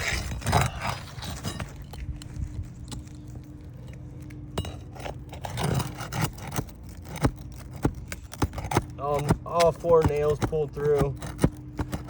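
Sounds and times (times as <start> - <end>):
roof shingles scraping: 0.0 - 3.6.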